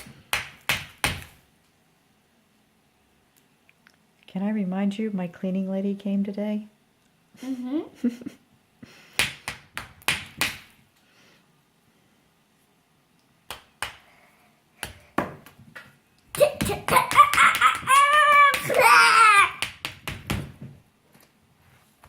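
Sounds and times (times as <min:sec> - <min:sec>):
child vocalizing sing-song: 0:16.4 - 0:19.6.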